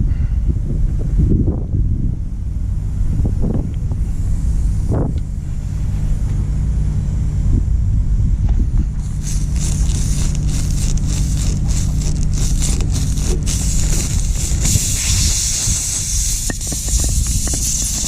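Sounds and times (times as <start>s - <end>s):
vehicle engine idling: 1.7s - 18.0s
loud high hiss: 8.9s - 18.0s.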